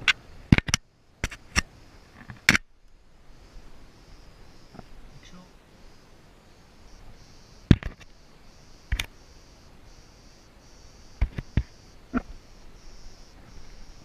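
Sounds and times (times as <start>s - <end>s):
sharp clicks and knocks: 0.0s - 2.7s, 7.7s - 8.1s, 11.2s - 12.3s.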